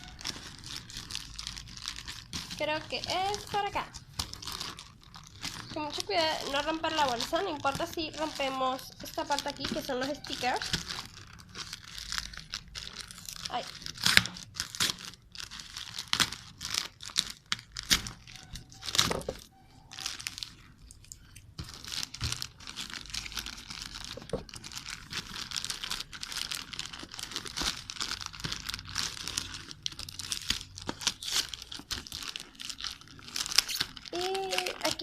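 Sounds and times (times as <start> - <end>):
plastic packaging crinkling and tearing: 0.0 - 35.0.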